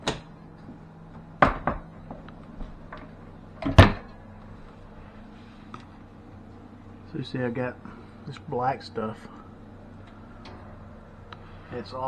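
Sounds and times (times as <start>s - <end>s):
door clunking: 1.4s - 4.2s.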